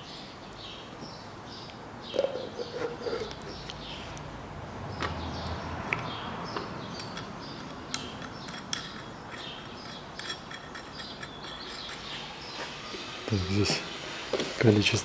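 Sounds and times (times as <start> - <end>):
metal clamps clicking and clinking: 7.0 - 12.1.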